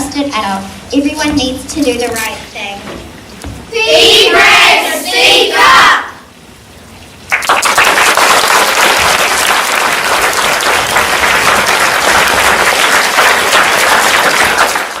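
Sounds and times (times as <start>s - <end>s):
audience applauding: 7.3s - 15.0s.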